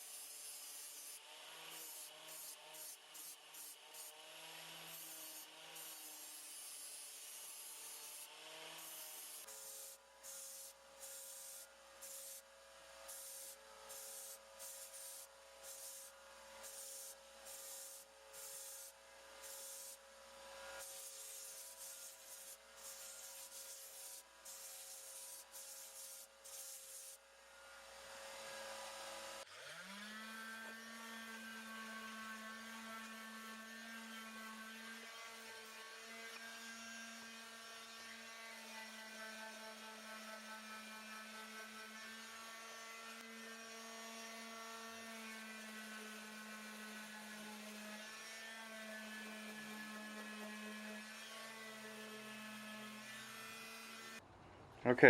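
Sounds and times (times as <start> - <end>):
hand sanding steel: 4.8 - 12.4, 13.1 - 20.0, 20.8 - 27.2
power tool motor whine: 27.8 - 37.3.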